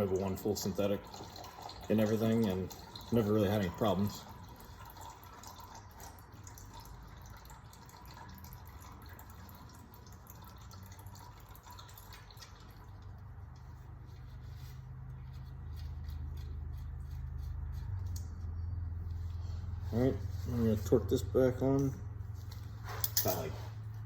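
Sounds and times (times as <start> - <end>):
oil dripping into a pan: 0.0 - 14.3.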